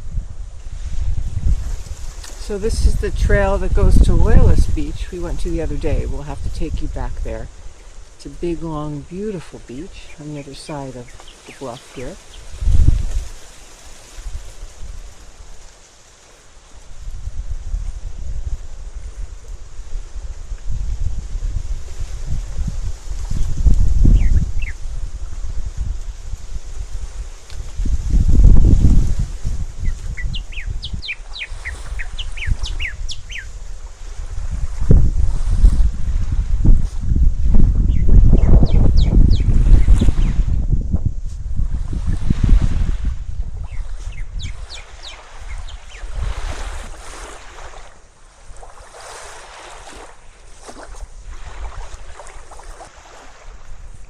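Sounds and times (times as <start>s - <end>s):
wind buffeting microphone: 0.0s - 15.8s, 16.6s - 54.0s
small waves washing on beach: 0.0s - 54.0s
small bird chirping: 10.1s - 13.0s, 23.4s - 24.9s, 29.8s - 33.6s, 37.8s - 40.4s, 43.6s - 46.3s.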